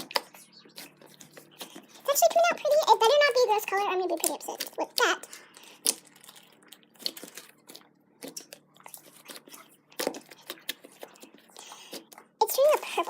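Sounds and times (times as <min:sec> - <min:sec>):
slime kneaded with wet pops: 0:04.1 - 0:13.0.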